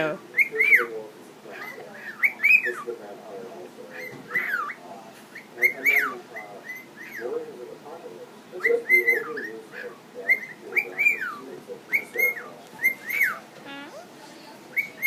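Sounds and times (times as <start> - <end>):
cockatiel whistling: 0.3 - 0.9, 1.6 - 2.9, 3.9 - 7.2, 8.6 - 13.4.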